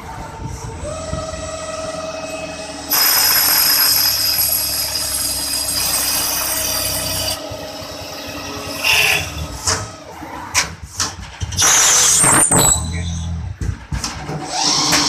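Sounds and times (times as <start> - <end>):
machine hissing whir: 2.9 - 7.4.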